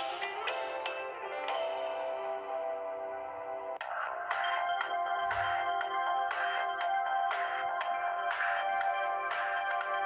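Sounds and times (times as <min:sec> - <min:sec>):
electronic ringtone tune over a beat: 0:03.4 - 0:10.0.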